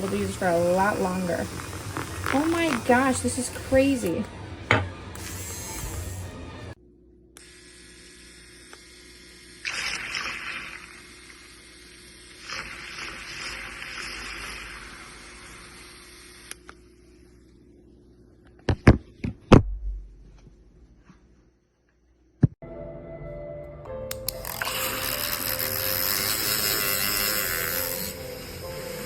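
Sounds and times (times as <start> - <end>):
milk frother humming: 0.0 - 6.8, 7.4 - 17.6, 24.2 - 29.0.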